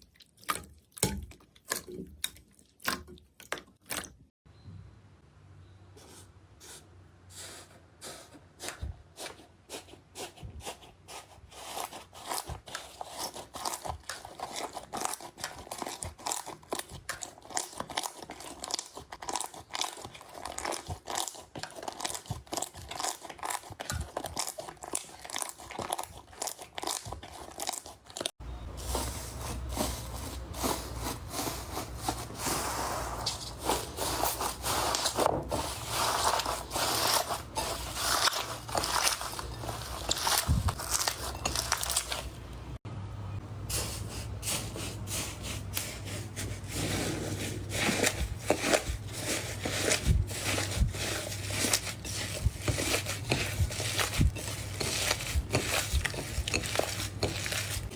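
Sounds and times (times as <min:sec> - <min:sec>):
slime crackling crunches: 0:32.5 - 0:42.4.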